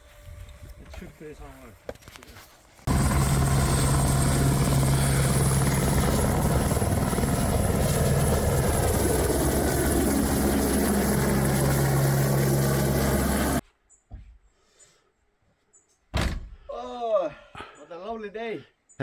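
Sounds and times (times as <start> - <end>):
helicopter rotor and turbine drone: 2.9 - 13.6.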